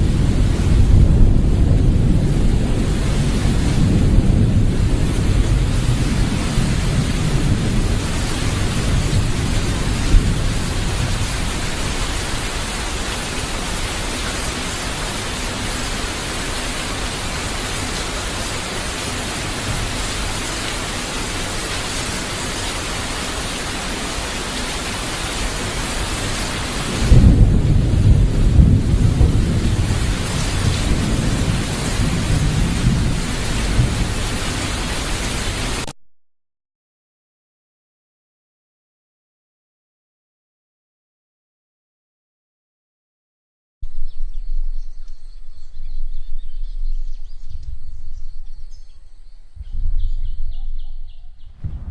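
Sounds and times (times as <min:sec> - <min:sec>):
deep rumbling: 0:00.0 - 0:12.0, 0:27.0 - 0:34.1, 0:43.8 - 0:51.9.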